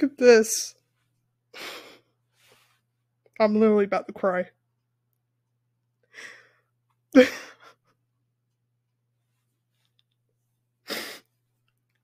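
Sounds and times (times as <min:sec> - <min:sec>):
soft breaths: 0:00.9 - 0:03.0.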